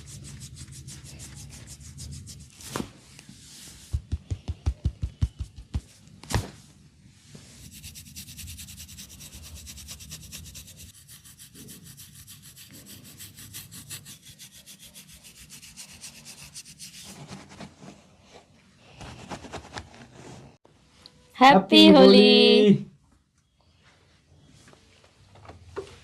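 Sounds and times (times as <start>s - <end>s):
hands rubbing hair: 0.0s - 2.8s, 3.4s - 6.1s
quick thuds: 3.9s - 6.6s.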